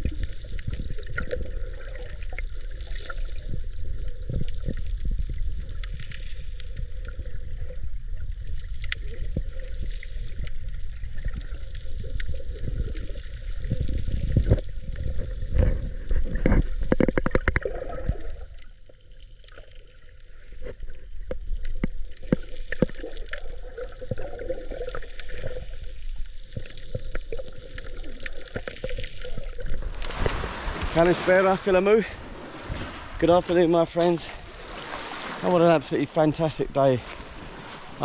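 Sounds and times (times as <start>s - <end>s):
seawater sloshing and gurgling: 0.0s - 38.0s
low rumble: 29.7s - 35.5s.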